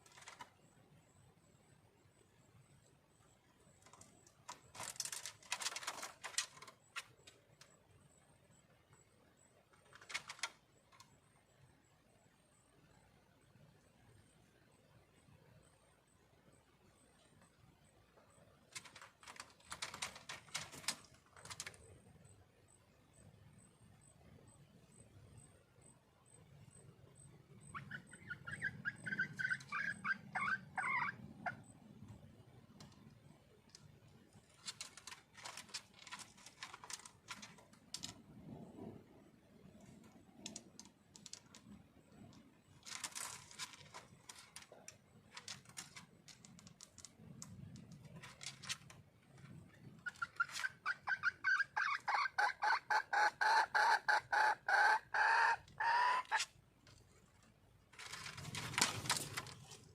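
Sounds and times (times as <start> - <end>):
hen clucking: 27.6 - 31.7, 50.0 - 56.6.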